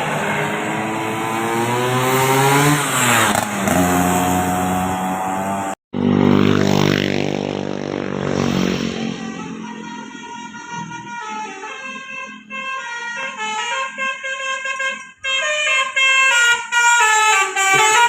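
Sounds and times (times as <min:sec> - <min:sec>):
bus engines passing: 0:00.0 - 0:18.0.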